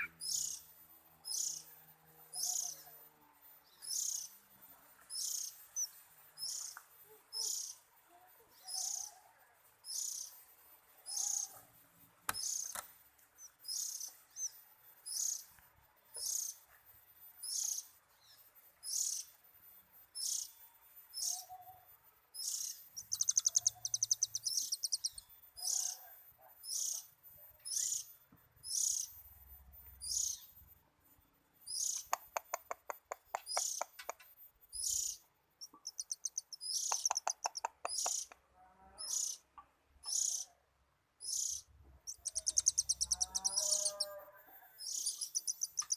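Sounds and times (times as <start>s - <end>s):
bird trilling: 0.0s - 0.6s, 23.0s - 25.8s, 34.8s - 38.4s, 41.2s - 44.2s.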